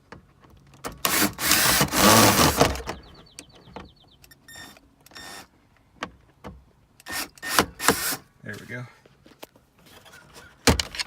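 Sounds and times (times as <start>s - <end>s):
screwdriver scraping and whirring: 1.0s - 2.9s.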